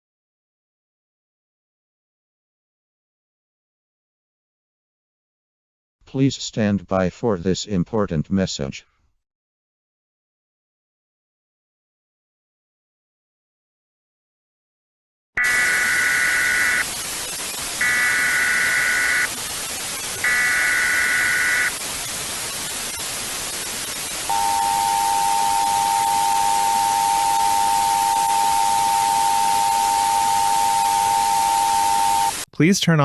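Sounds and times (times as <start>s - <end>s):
digital data tones: 15.4s - 21.8s, 24.3s - 32.4s
static hiss: 15.4s - 32.5s
two-tone alert signal: 24.3s - 32.4s.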